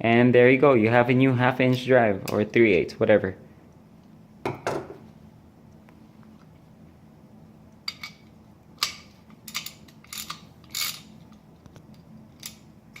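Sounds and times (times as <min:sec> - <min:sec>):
ratchet wrench clicking: 0:08.8 - 0:11.1.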